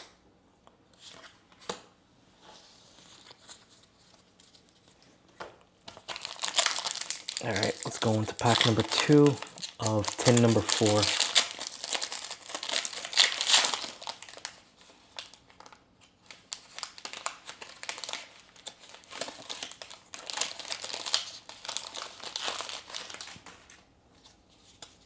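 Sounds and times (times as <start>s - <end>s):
foil wrapper crinkling: 5.9s - 23.8s.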